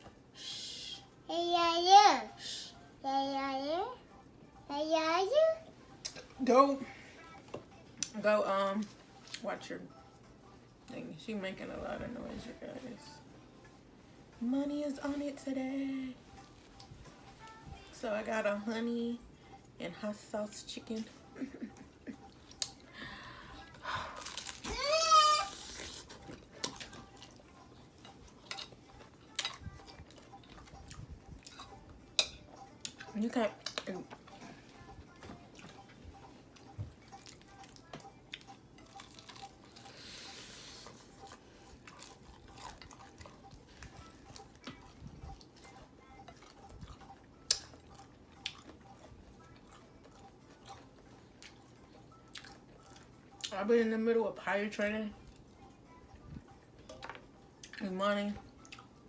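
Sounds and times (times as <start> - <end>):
person chewing food: 21.8 - 53.5, 58.4 - 59.0.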